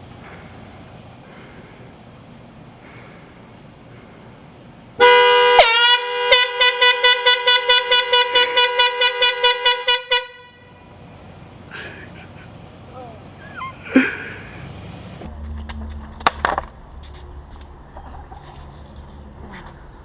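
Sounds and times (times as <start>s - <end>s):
air horn blasts: 5.0s - 11.0s.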